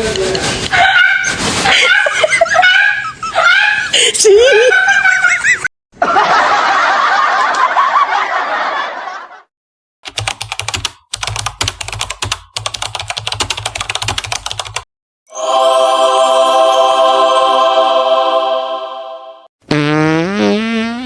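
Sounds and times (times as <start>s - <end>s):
person laughing: 1.6s - 6.6s
computer keyboard typing: 10.0s - 14.8s.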